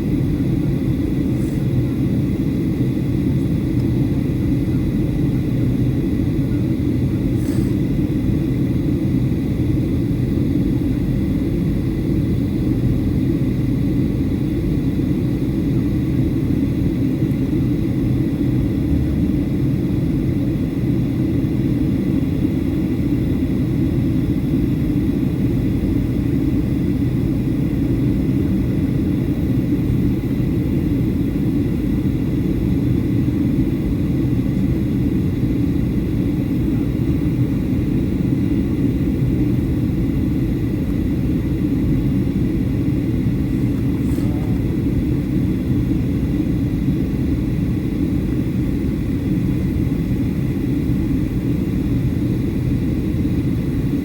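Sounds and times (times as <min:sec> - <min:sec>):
airplane cabin engine rumble: 0:00.0 - 0:54.0
faint high whines: 0:33.2 - 0:47.4.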